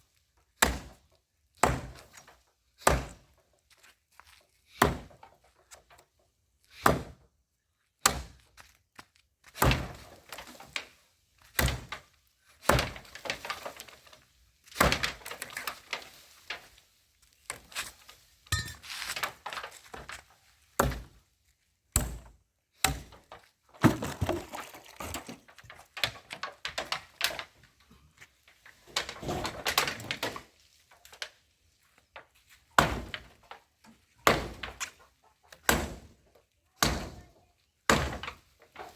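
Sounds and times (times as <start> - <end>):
falling debris clatter: 23.7 - 30.4.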